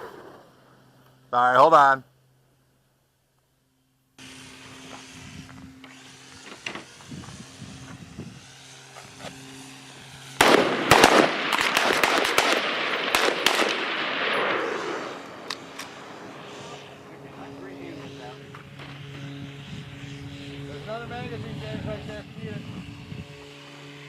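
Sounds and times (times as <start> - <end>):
steady low hum: 0.0 - 24.0
guns firing: 10.4 - 16.5.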